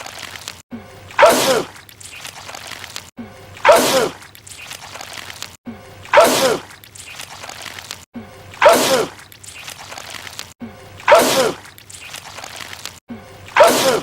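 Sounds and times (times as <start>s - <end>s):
man sneezing: 11.1s - 11.6s, 13.6s - 14.0s.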